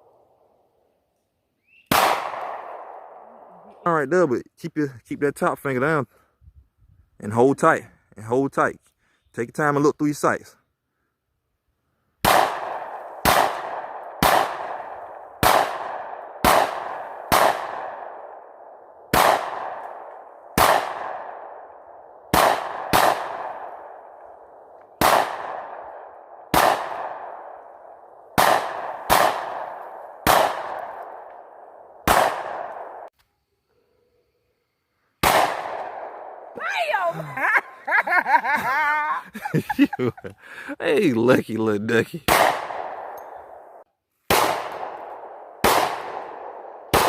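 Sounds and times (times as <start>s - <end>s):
handgun shots ringing: 1.9s - 3.0s, 32.0s - 33.1s.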